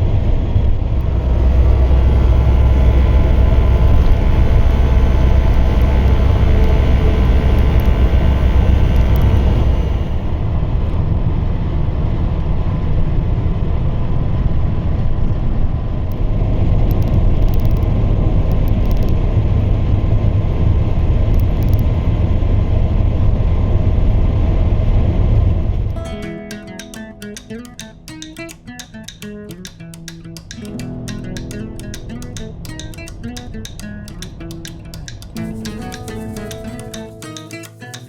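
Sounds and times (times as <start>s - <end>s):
engine and road noise rumble: 0.0s - 26.2s.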